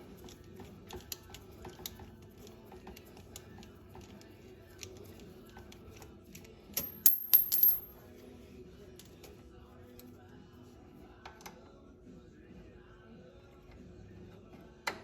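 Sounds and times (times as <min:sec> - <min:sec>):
metallic clicks and clinks: 0:06.8 - 0:08.0
ringing metal clinks: 0:06.8 - 0:08.0.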